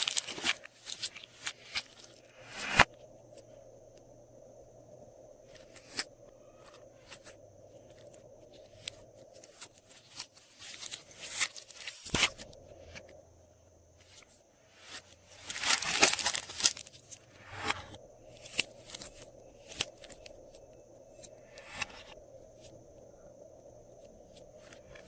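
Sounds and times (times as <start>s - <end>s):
plastic bags crinkling: 0.0s - 2.2s, 15.3s - 17.2s.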